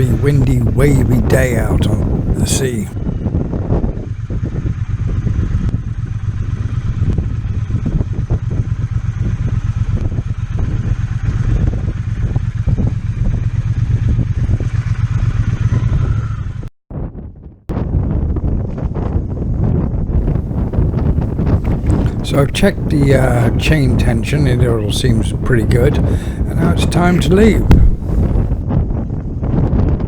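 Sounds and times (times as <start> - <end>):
motorcycle engine rumbling: 20.2 - 28.6.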